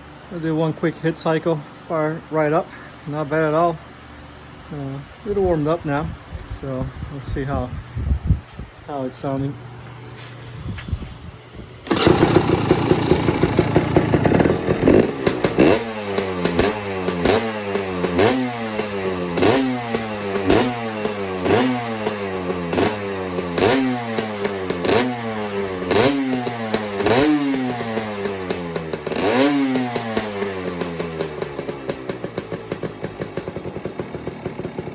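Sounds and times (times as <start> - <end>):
exhaust crack: 11.8 - 34.9
two-stroke motorcycle engine revving: 11.8 - 34.9.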